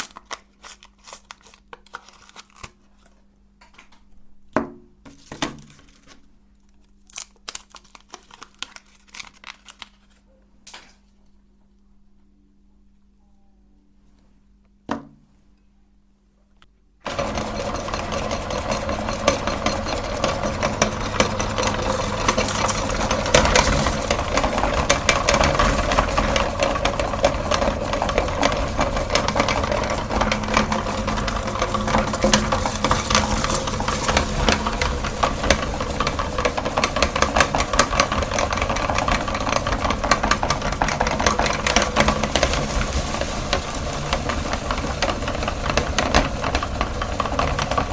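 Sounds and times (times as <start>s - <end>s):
crackle of grinding ice cream: 0.0s - 3.3s, 5.6s - 10.3s, 17.0s - 47.9s
meat grinder motor running: 17.0s - 47.9s.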